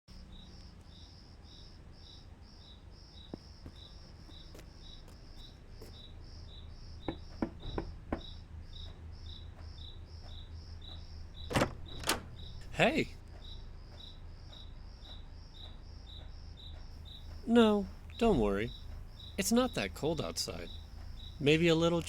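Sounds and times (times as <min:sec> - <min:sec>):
crickets chirping: 0:00.1 - 0:22.0
low steady hum: 0:06.1 - 0:22.0.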